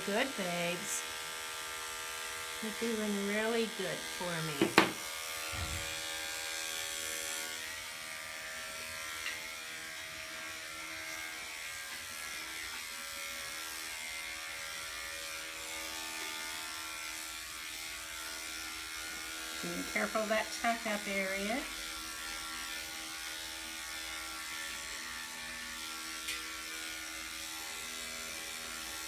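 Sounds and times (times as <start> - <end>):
electric clippers humming: 0.0 - 29.0
low thump: 4.6 - 6.0.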